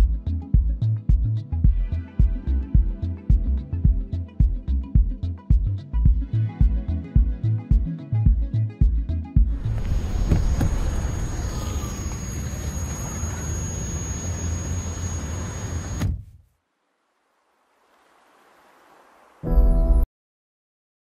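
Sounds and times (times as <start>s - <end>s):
faint high whine: 9.5s - 16.1s
noisy vehicle rumble: 9.5s - 16.1s.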